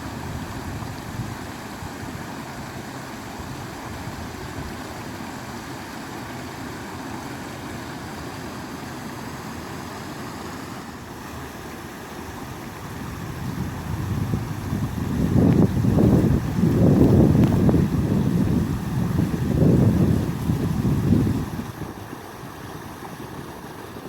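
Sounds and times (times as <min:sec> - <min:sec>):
water rushing: 0:00.0 - 0:24.0.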